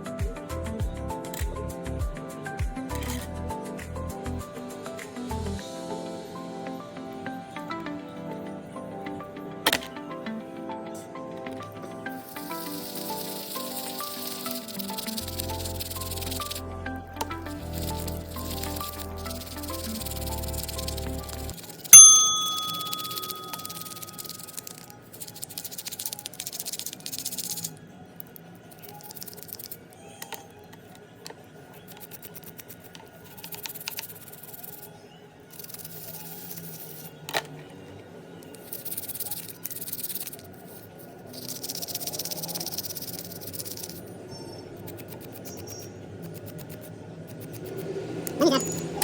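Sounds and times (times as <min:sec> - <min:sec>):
small metal parts clicking: 0:17.2 - 0:30.4
bright metallic ding: 0:22.0 - 0:24.2.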